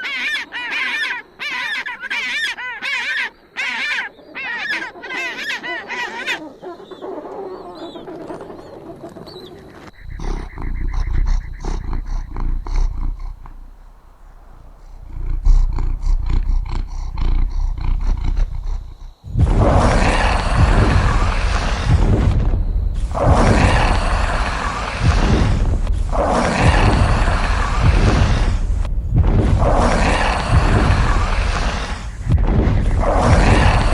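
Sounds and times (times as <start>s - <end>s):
bird cawing: 0.0s - 9.0s, 9.6s - 33.9s
large animal growling: 9.9s - 33.9s
loud rushing noise: 19.2s - 33.9s.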